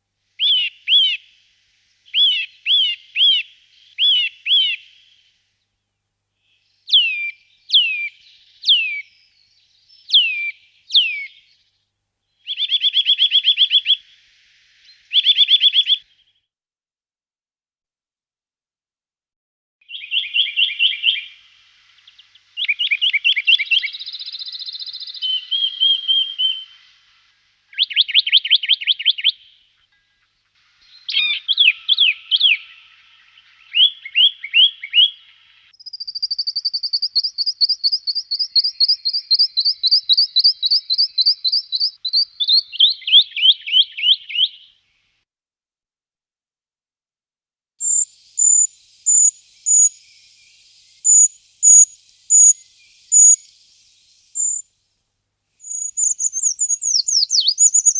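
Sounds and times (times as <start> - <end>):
songbird singing high notes: 19.9 - 26.9, 30.8 - 44.7, 47.8 - 54.7, 55.6 - 57.9.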